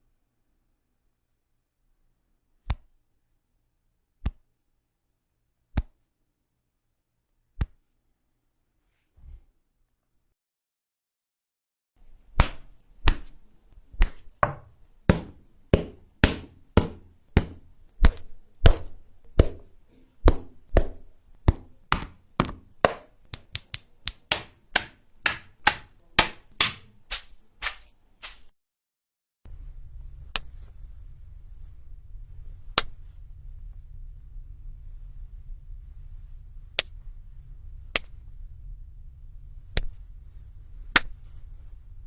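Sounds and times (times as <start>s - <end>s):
steady low rumble: 29.5s - 42.0s.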